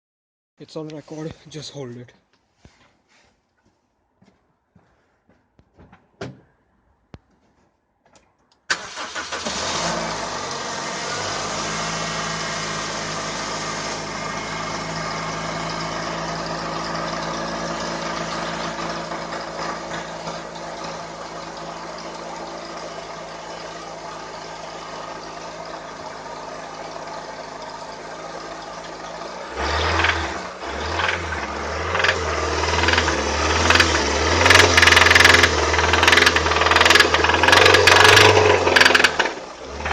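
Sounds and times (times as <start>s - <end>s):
car engine starting and idling: 8.6s - 39.9s
engine knocking and rattling: 12.9s - 39.9s.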